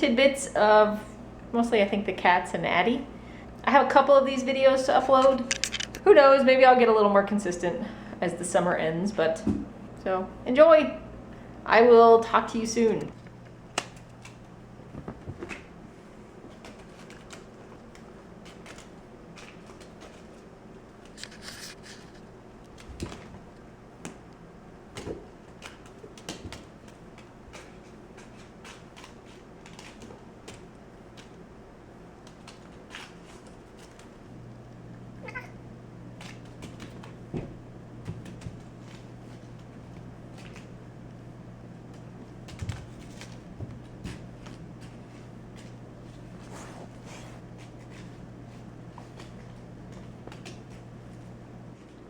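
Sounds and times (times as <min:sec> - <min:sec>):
steady low hum: 0:00.0 - 0:52.0
cat meowing: 0:35.2 - 0:35.6.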